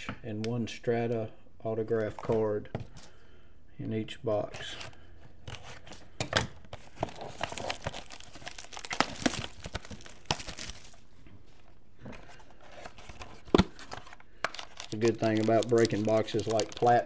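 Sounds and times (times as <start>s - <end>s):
wrapper crinkling and tearing: 7.1s - 11.0s, 12.8s - 17.0s.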